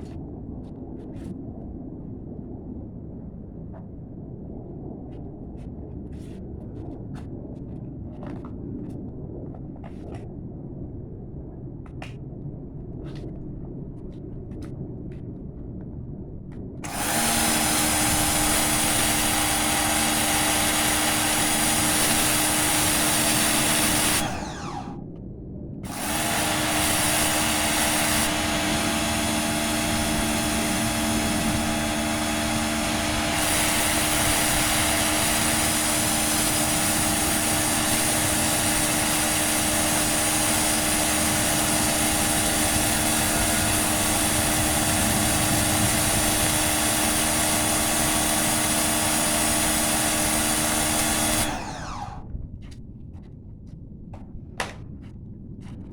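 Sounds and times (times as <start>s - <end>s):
pressure washer running: 16.8s - 25.0s, 25.8s - 52.3s.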